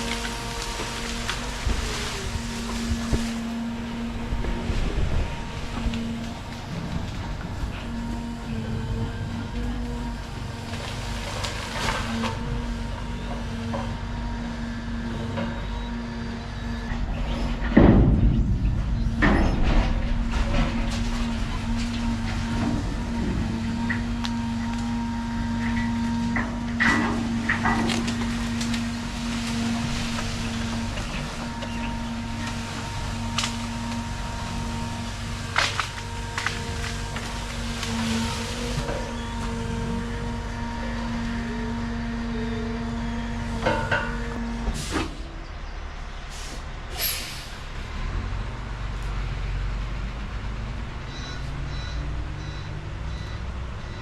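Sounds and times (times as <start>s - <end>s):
heavy machine engine running: 0.0s - 54.0s
reversing alarm beeping: 15.1s - 17.7s, 51.1s - 54.0s
air brake hisses: 46.3s - 47.6s.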